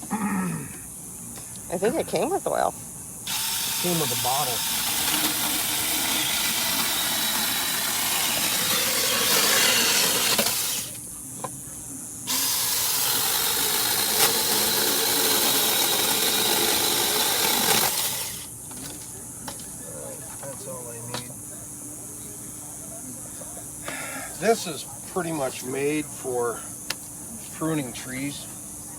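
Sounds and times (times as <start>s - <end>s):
electric chainsaw whirring: 3.2s - 11.0s, 12.3s - 18.9s.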